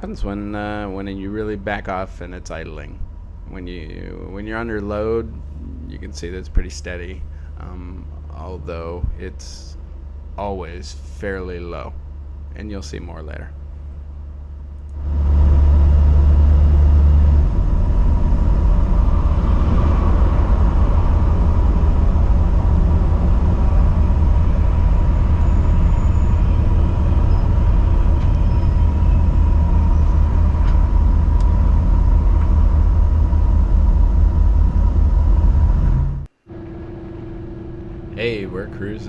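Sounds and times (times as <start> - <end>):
engine and road rumble: 0.0 - 39.0
faint high whine: 0.0 - 39.0.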